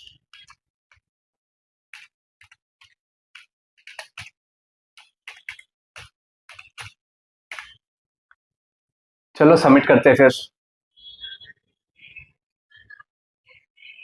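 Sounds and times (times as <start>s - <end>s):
computer keyboard keys clicking: 2.0s - 4.3s, 5.0s - 7.8s.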